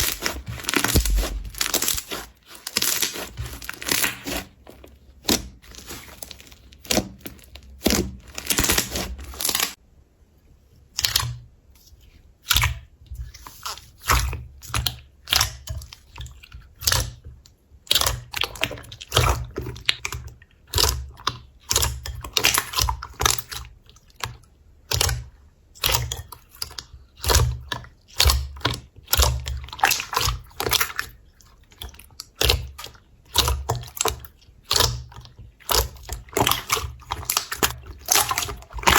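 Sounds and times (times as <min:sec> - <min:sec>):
slime crackling and popping: 0:00.0 - 0:04.5, 0:05.2 - 0:09.8
soft low thuds: 0:00.9 - 0:01.8.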